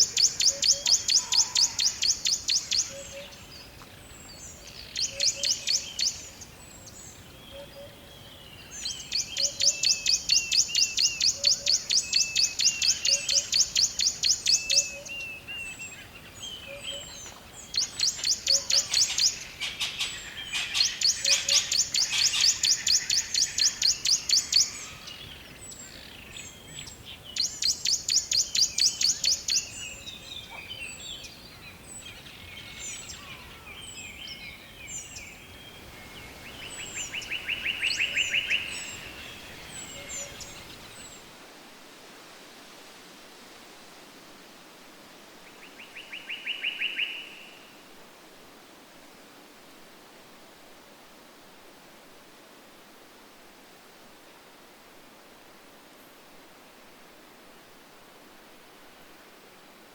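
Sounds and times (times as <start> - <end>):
songbirds rapid high chirps: 0.0 - 41.2.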